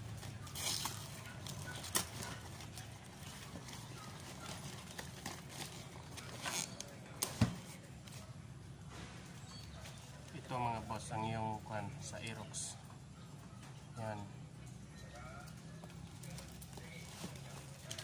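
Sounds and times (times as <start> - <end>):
objects being handled: 0.0 - 8.2.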